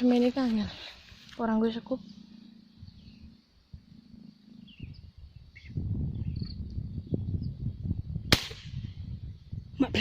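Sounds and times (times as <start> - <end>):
insect drone: 0.0 - 7.6
low rumbling microphone noise: 0.0 - 10.0
bird chirps: 1.8 - 7.6.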